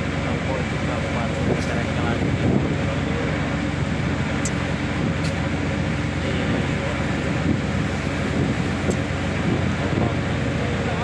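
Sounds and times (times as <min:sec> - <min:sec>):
boat engine running: 0:00.0 - 0:11.0
wind noise: 0:01.3 - 0:03.1, 0:04.4 - 0:11.0.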